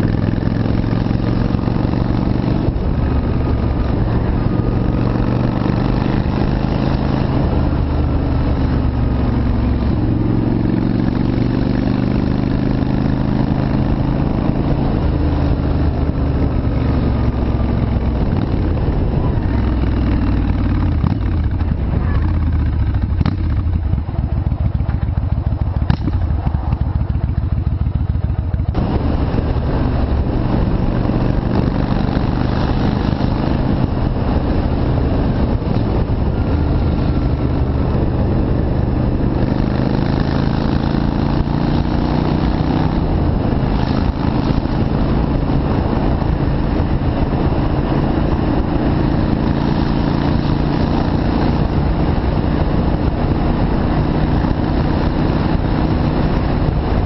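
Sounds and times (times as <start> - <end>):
motorcycle engine revving: 0.0 - 57.0
rushing noise: 13.5 - 52.4.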